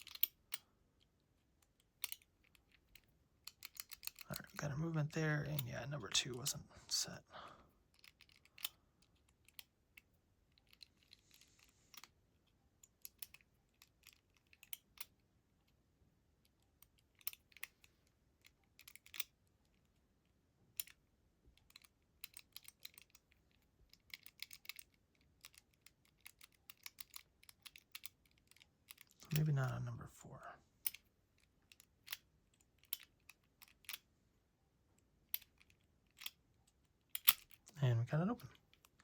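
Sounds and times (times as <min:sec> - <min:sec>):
combination padlock wheels clicking: 0:00.0 - 0:00.6, 0:01.6 - 0:06.6, 0:07.9 - 0:11.2, 0:12.8 - 0:15.2, 0:16.6 - 0:19.4, 0:20.7 - 0:21.0, 0:21.6 - 0:29.5, 0:30.8 - 0:34.0, 0:35.2 - 0:36.4, 0:37.1 - 0:37.7.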